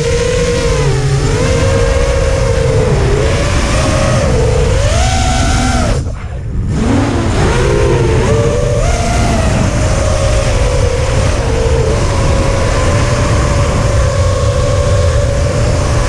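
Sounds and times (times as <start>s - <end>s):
drone motors whining: 0.0s - 16.0s
low rumble: 0.0s - 16.0s.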